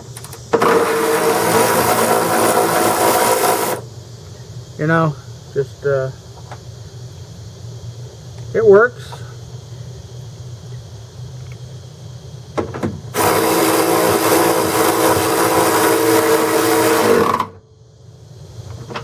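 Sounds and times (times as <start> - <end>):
cordless ratchet motor whining: 0.0 - 3.8, 13.2 - 17.6.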